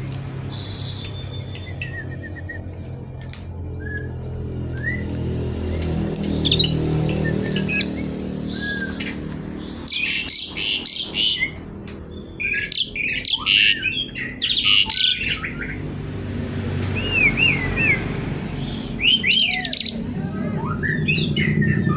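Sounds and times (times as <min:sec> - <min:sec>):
starling looping whistles: 0:00.5 - 0:02.7, 0:06.2 - 0:11.6, 0:16.8 - 0:21.9.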